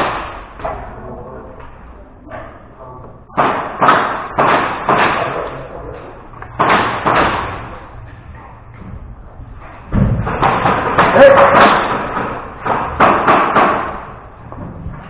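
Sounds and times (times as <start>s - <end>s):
bangs and knocks echoing: 0.0s - 0.9s, 3.3s - 5.6s, 6.5s - 8.1s, 9.8s - 14.9s.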